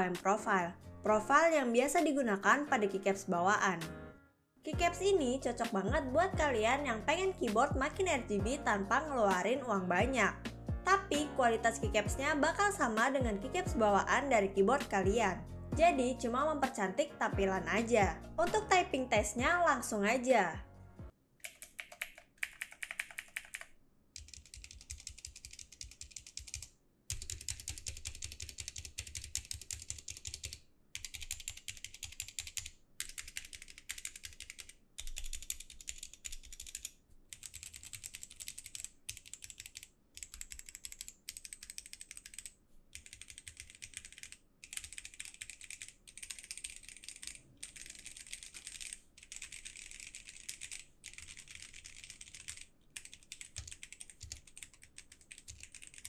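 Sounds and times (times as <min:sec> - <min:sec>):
mechanical keyboard typing: 0:21.4 - 0:56.0.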